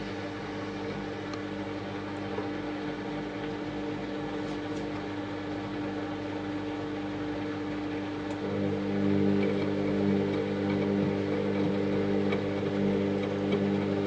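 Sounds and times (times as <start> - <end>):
washing machine motor hum: 0.0 - 14.0.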